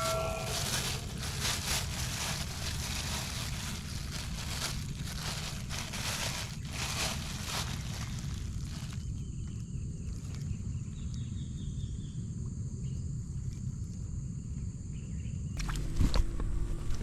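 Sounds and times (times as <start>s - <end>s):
loud rustling: 0.0s - 9.0s
low rumble: 0.0s - 10.1s, 15.6s - 17.0s
insects singing: 0.0s - 12.2s.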